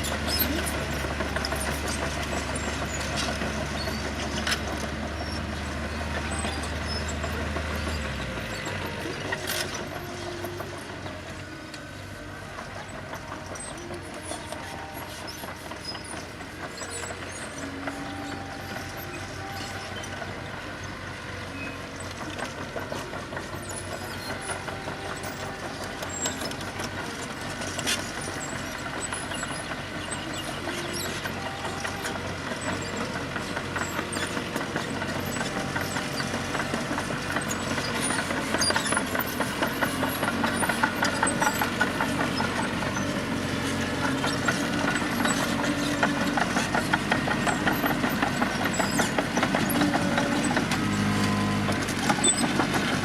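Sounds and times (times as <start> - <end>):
diesel engine of heavy machinery: 0.0 - 53.0.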